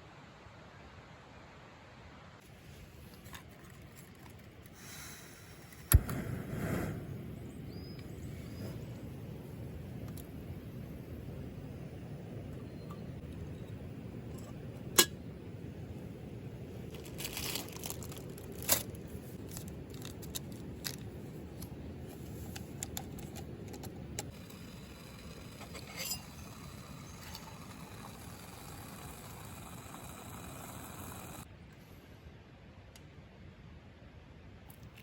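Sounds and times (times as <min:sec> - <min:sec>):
crinkling rustles: 0:02.4 - 0:04.8, 0:16.8 - 0:23.9
steady low rumble: 0:05.2 - 0:25.6.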